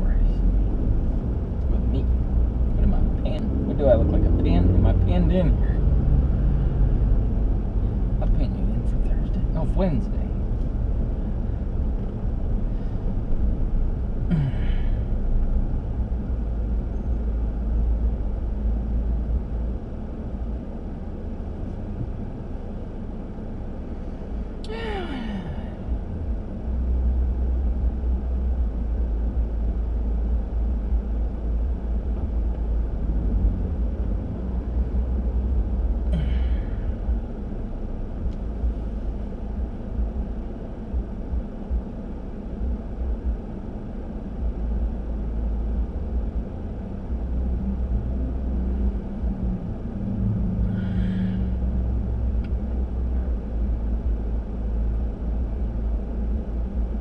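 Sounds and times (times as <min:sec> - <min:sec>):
car road rumble: 0:00.0 - 0:57.0
man making breathy vocal sounds: 0:24.7 - 0:25.7.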